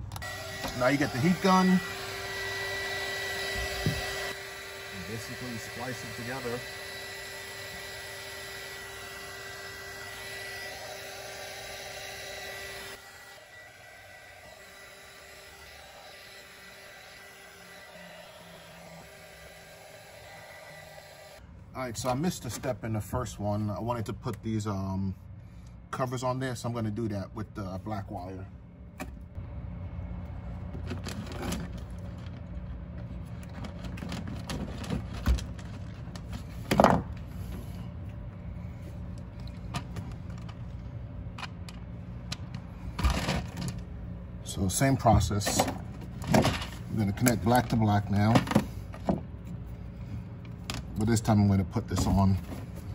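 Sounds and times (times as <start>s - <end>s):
heat gun blowing: 0.0s - 21.4s.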